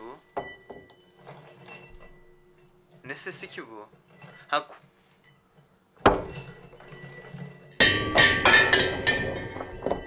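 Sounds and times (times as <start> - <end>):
struck percussion with ringing tones: 0.0 - 3.0.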